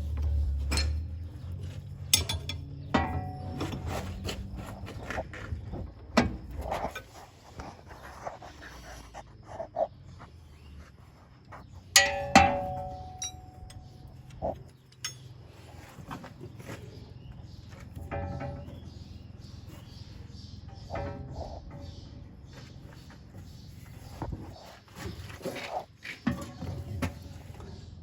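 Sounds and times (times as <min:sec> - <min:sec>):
metal tools clanking and tapping: 0:00.1 - 0:07.3, 0:11.9 - 0:22.6, 0:25.0 - 0:28.0.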